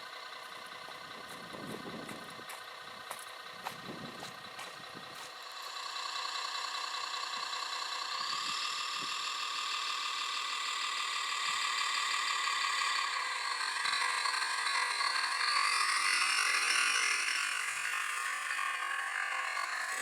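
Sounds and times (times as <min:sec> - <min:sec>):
small electric motors whining: 0:03.9 - 0:20.0.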